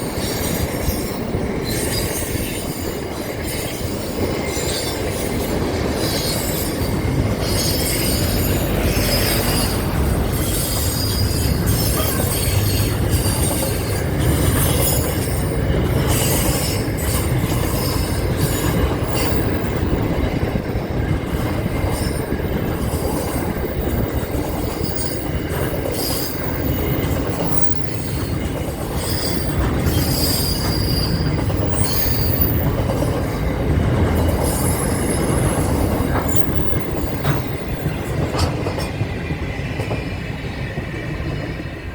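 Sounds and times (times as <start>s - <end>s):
train wheels rumbling on rails: 0.0s - 41.9s
high wheel squeals: 0.1s - 20.5s, 23.4s - 33.3s.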